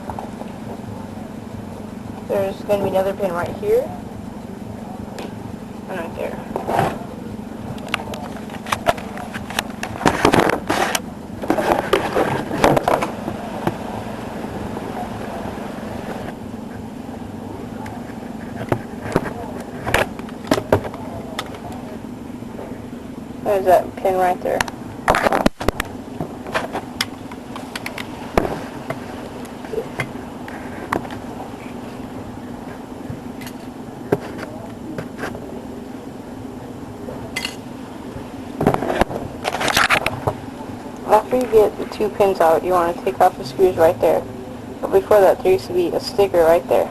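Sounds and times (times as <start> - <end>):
steady low hum: 0.0 - 46.9.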